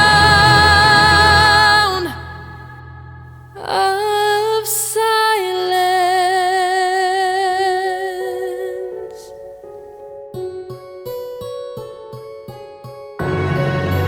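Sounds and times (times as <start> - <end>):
woman singing with vibrato: 0.0 - 9.3
sustained instrumental chords: 13.2 - 14.0.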